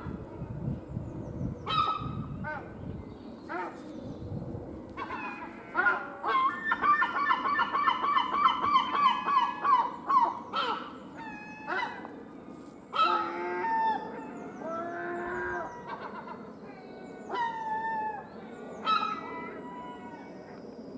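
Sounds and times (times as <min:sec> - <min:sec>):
low background noise: 0:00.0 - 0:20.9
seagulls calling: 0:05.0 - 0:12.2, 0:13.0 - 0:20.5.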